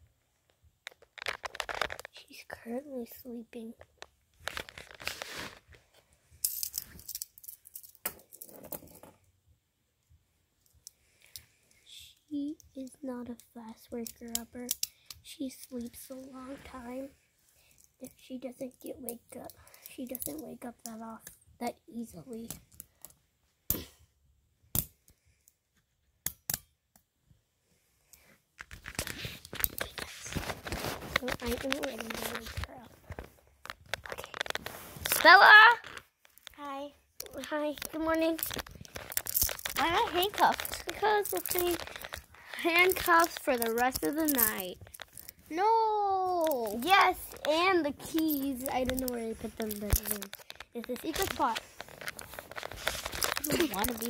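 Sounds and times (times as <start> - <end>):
rustling: 0.8 - 9.2, 28.1 - 54.0
handcuff chain rattling: 38.0 - 45.4.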